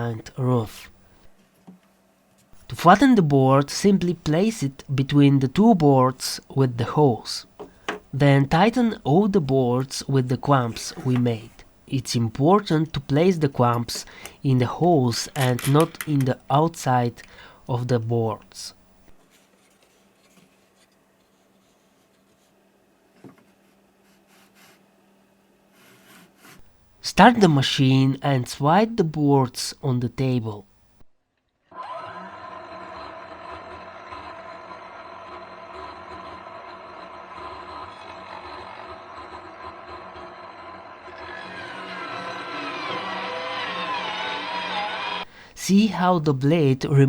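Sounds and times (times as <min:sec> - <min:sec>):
table saw cutting board: 0:41.1 - 0:45.2.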